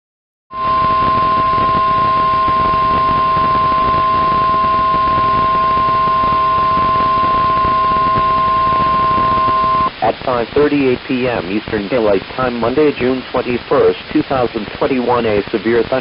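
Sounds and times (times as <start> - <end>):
fainter lower tone: 0.5 - 9.9
steady alarm tone: 0.5 - 10.0
radio static: 0.5 - 16.0.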